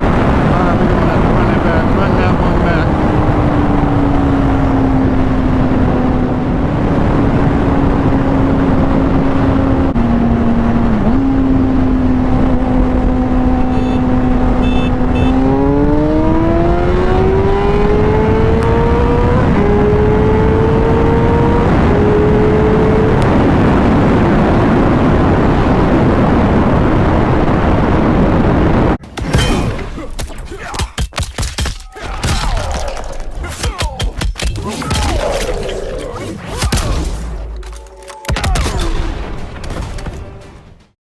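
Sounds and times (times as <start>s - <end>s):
motorcycle engine accelerating: 0.0s - 29.0s
wind rush: 0.0s - 29.0s.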